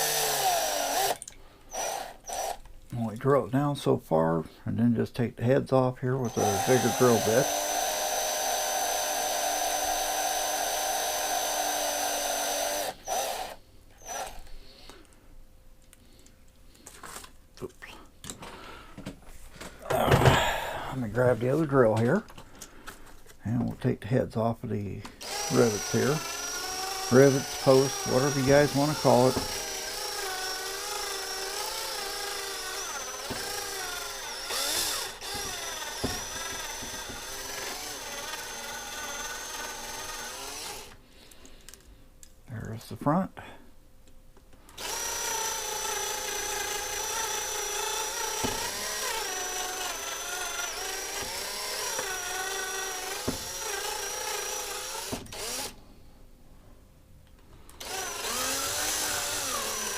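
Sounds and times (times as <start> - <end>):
small electric drill running: 0.0 - 2.7, 6.2 - 14.5, 25.2 - 41.0, 44.7 - 55.8, 57.7 - 59.9.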